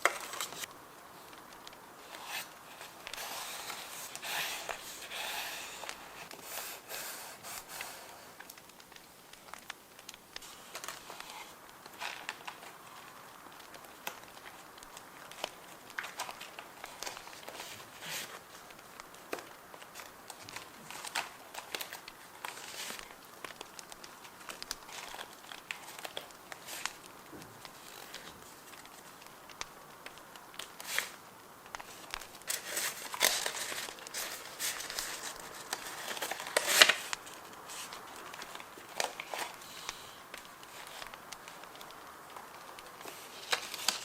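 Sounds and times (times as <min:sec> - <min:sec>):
paper rustling and crinkling: 0:00.0 - 0:44.0.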